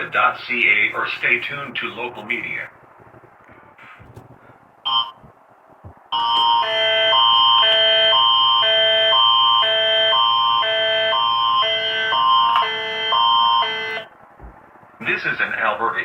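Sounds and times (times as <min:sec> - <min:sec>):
high steady alert tone: 0:06.1 - 0:14.1.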